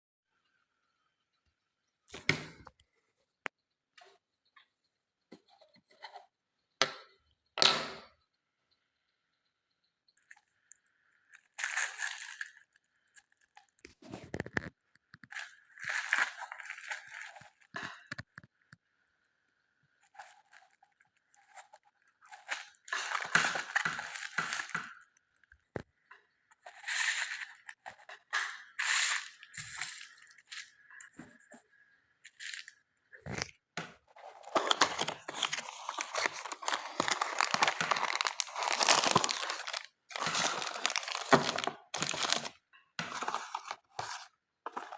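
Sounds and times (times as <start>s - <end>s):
packaging crinkling: 10.7s - 14.6s, 15.3s - 18.1s, 20.0s - 25.5s, 34.1s - 44.9s.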